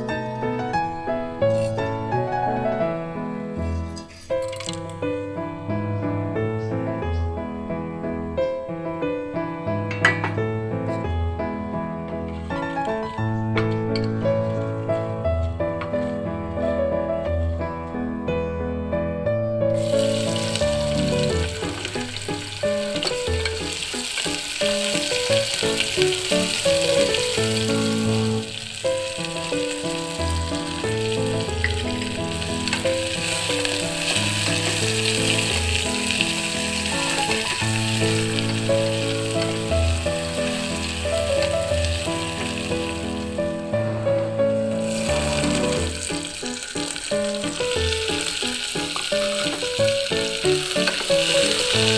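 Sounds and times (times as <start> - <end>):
background music: 0.0 - 51.9
food sizzling in oil: 4.4 - 4.8, 19.8 - 43.5, 44.5 - 51.9.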